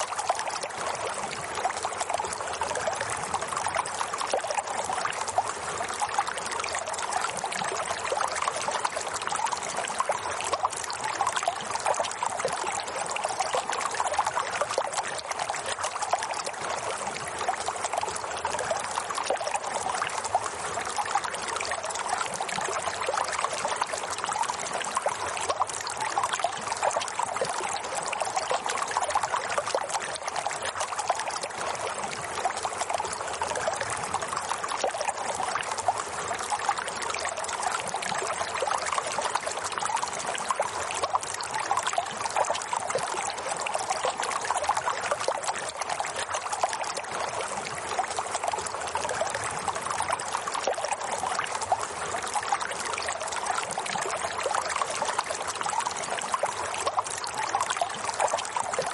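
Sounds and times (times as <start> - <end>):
water trickling and splashing: 0.0 - 58.9.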